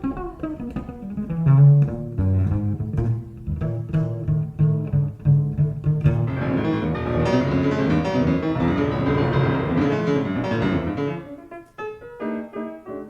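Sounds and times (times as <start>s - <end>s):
jazz piano: 0.0s - 13.0s
double bass: 1.2s - 11.3s.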